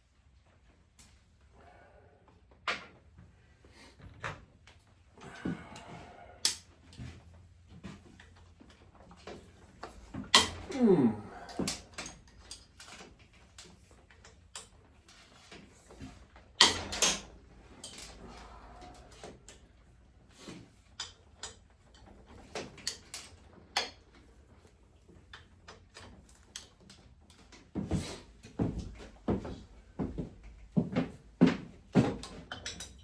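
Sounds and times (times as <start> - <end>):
hand tools and metal parts clinking: 9.2 - 19.6, 32.0 - 33.0.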